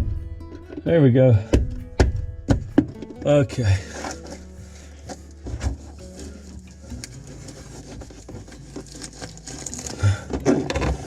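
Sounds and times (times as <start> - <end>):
wire and parts knocking on wood: 1.5 - 3.3.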